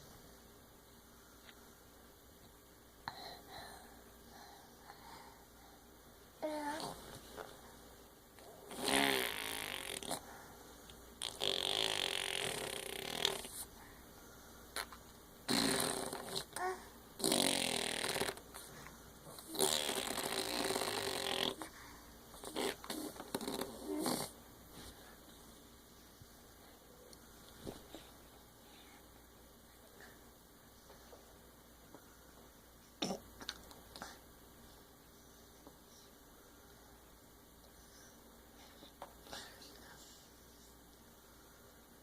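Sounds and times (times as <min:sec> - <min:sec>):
baby snoring: 0:11.2 - 0:13.7, 0:15.5 - 0:18.7, 0:19.3 - 0:21.7, 0:22.4 - 0:24.4.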